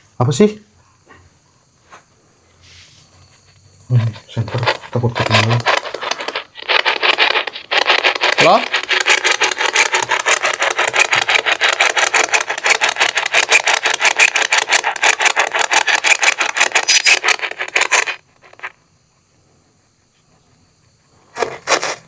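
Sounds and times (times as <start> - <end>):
chopped radio static hiss: 3.9 - 18.7.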